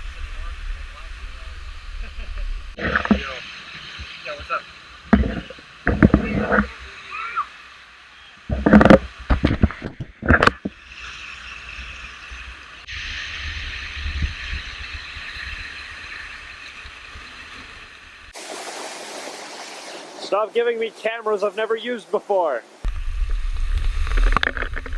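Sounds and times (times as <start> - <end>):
waterfall rushing: 18.3 - 22.9.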